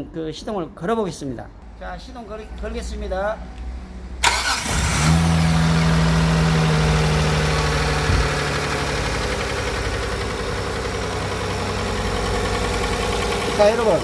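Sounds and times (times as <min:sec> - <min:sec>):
engine humming: 0:03.6 - 0:14.0
engine idling with tapping: 0:05.8 - 0:14.0.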